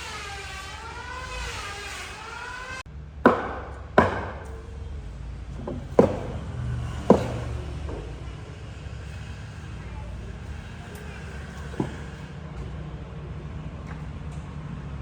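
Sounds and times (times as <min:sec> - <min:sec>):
sharp blows on wood: 0:05.6 - 0:08.4.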